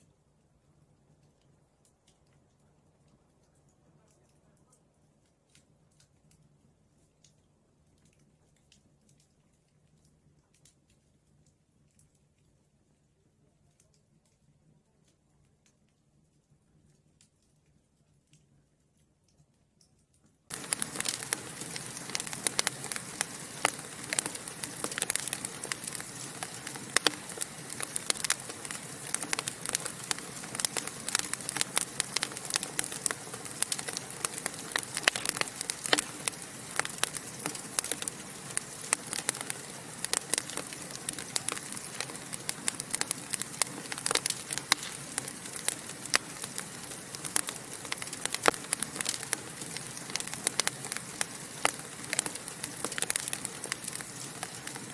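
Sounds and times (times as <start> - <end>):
logs crackling in a fireplace: 20.5 - 54.9.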